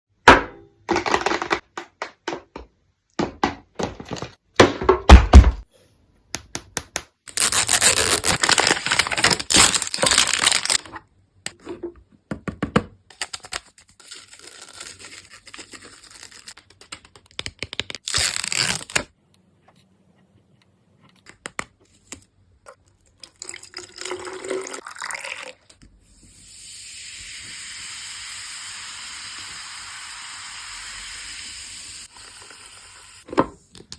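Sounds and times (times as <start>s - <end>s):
packaging rustling and tearing: 7.3s - 10.9s, 13.1s - 19.1s.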